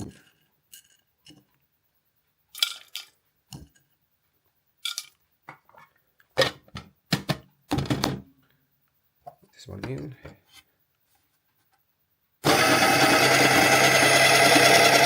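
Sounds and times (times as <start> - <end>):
clinks of containers and grinder parts: 2.5 - 3.9.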